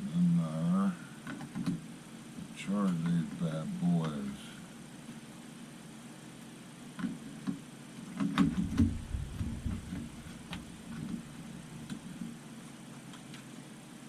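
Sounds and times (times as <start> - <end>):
deep bump and rustle: 8.2 - 12.4.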